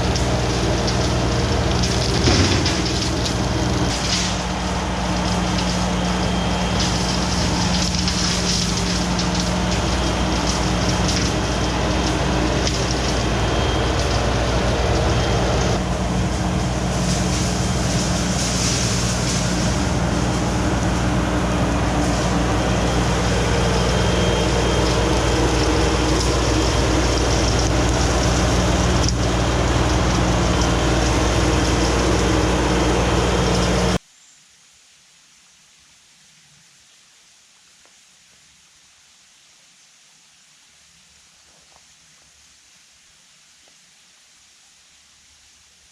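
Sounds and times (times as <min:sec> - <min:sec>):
engine running: 0:00.0 - 0:34.0.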